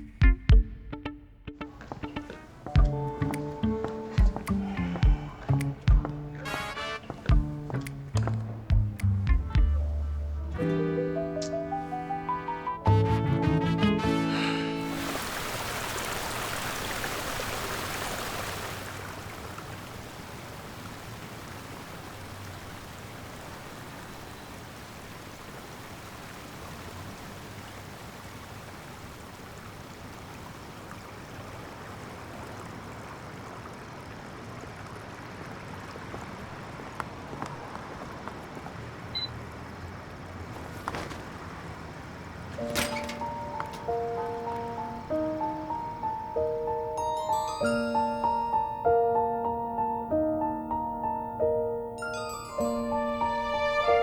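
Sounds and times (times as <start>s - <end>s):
running water hissing: 1.8s - 9.0s, 14.3s - 31.7s, 37.4s - 48.2s.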